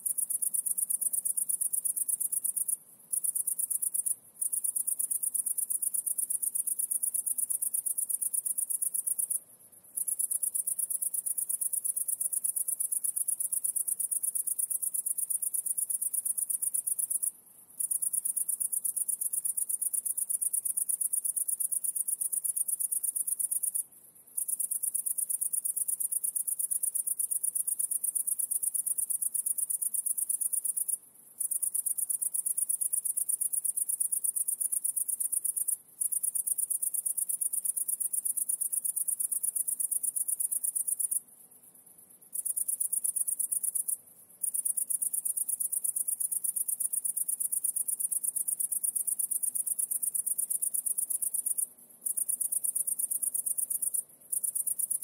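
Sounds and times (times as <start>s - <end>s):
high-pitched insect trill: 42.3s - 55.0s.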